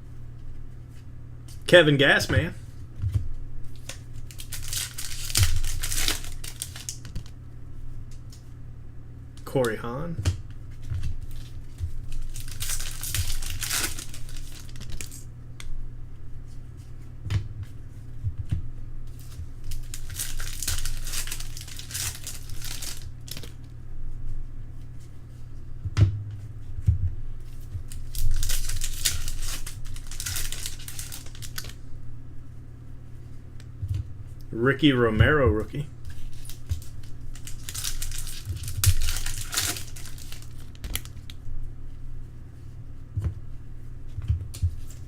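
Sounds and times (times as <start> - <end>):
card pack wrappers crinkling: 3.7 - 7.4, 11.2 - 15.3, 19.1 - 23.7, 27.5 - 31.8, 36.0 - 41.4.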